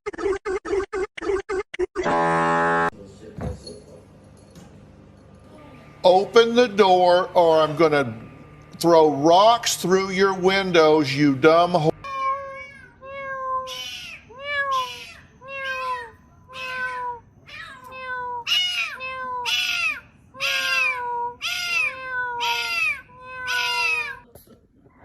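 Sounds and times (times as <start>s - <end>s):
cat meowing: 12.0s - 24.3s.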